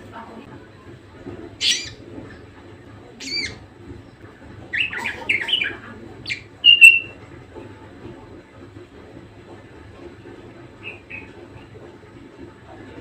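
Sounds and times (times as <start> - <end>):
budgerigar chirping and whistling: 1.6 - 2.0, 3.2 - 3.6, 4.8 - 7.2.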